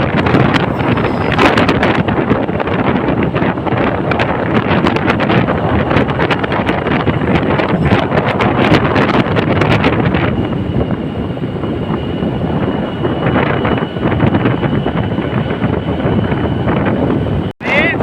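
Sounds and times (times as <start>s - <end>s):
road travel noise: 0.0s - 18.0s
wind buffeting microphone: 0.0s - 18.0s
thin high tone: 0.5s - 1.8s.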